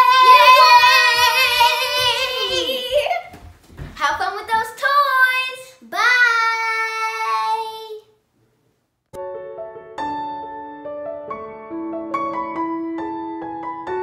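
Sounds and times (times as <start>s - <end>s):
piano music: 9.2s - 14.0s.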